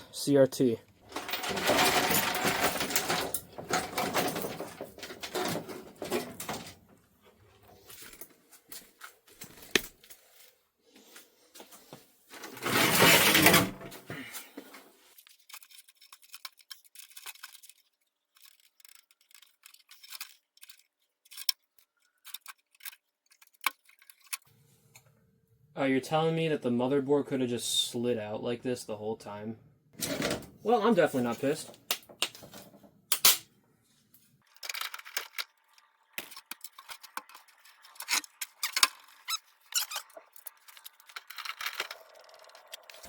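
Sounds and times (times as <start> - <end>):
loud scraping and rustling: 12.4 - 13.9.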